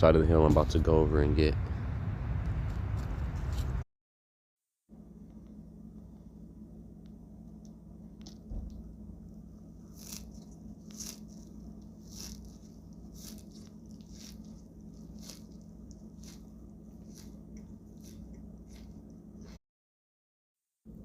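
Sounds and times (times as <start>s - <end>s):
footsteps crunching dry vegetation: 9.8s - 19.6s.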